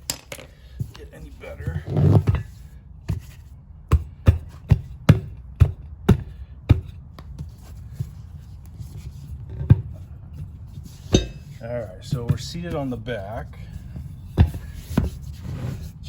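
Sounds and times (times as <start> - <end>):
tire handling noise: 0.0 - 16.0
sharp knocks on tire: 3.9 - 7.4.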